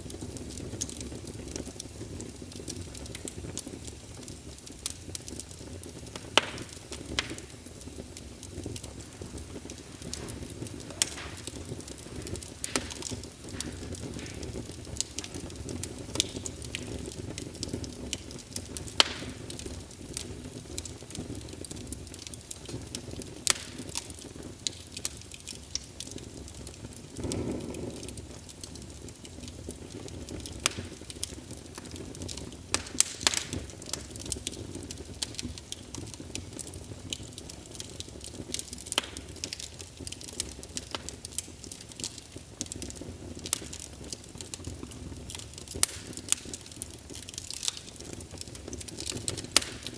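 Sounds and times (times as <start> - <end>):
fire crackling and popping: 0.0 - 49.9
fire rumbling: 0.0 - 49.9
flame surge: 6.2 - 18.8, 27.1 - 28.4.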